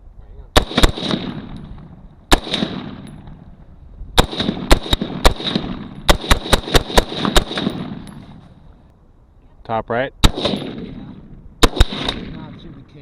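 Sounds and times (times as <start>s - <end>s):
gunshots with echo: 0.6s - 3.3s, 4.2s - 8.2s, 10.2s - 12.8s.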